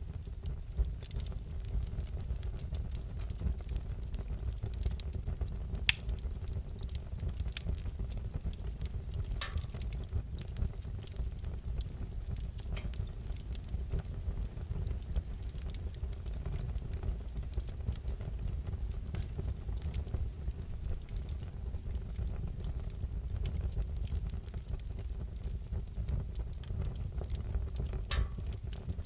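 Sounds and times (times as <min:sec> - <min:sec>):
wood fire crackling: 0:00.0 - 0:29.0
fire pops: 0:00.1 - 0:29.0.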